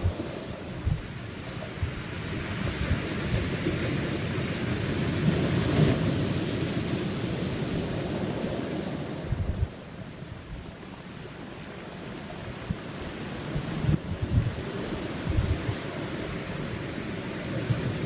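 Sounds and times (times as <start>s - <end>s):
wind buffeting microphone: 0.0s - 10.8s, 12.4s - 18.0s
waves washing onto rocky shore: 0.0s - 18.0s.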